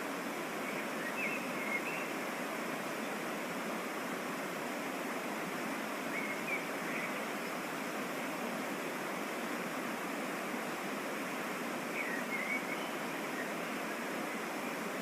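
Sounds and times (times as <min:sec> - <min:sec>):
rushing water of waterfall: 0:00.0 - 0:15.0.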